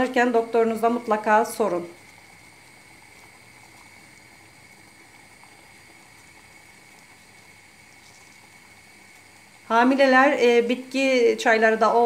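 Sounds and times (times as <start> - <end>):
water simmering with bubbling hiss: 0.0 - 12.0
small ticks: 2.0 - 9.5.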